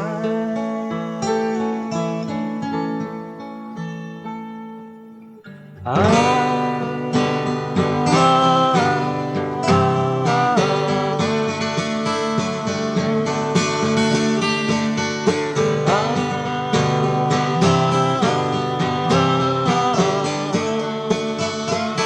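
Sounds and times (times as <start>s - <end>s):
acoustic guitar music: 0.0s - 22.0s.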